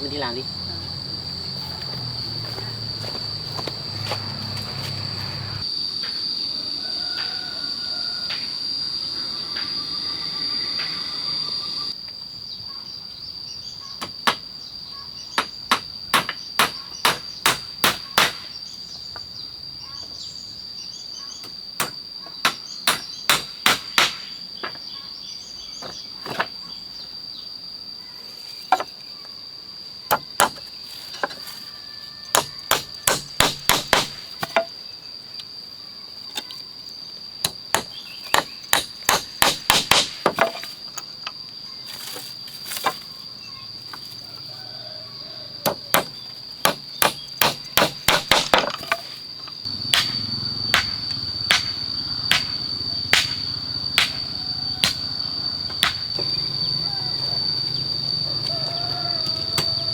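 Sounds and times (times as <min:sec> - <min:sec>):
insects droning: 0:00.0 - 0:59.9
hammer blows: 0:49.7 - 0:57.2.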